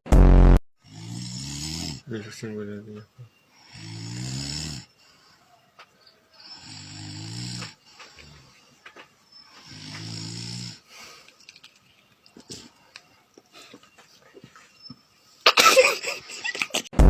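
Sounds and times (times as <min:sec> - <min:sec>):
person snoring: 0:00.8 - 0:02.1, 0:03.6 - 0:05.0, 0:06.4 - 0:08.6, 0:09.6 - 0:11.1
faint breathing: 0:04.8 - 0:11.6.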